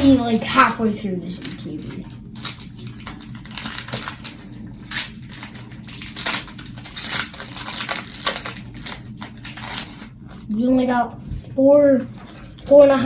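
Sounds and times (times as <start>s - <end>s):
foil wrapper crinkling: 0.3s - 10.5s.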